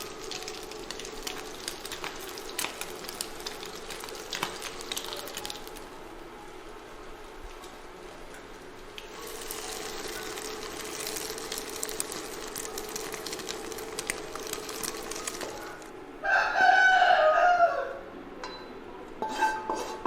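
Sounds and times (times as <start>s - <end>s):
steady hiss with crackling: 0.0s - 16.1s
rooster crowing: 16.2s - 18.2s.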